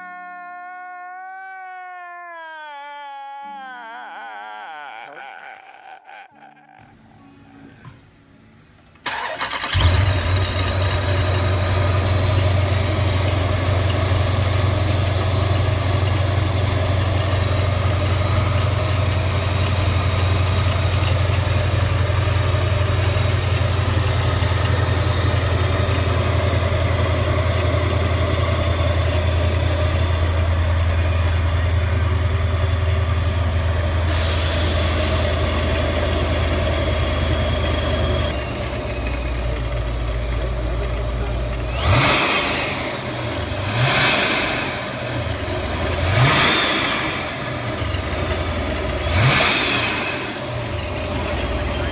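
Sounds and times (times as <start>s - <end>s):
car engine cranking and idling: 8.9s - 51.9s.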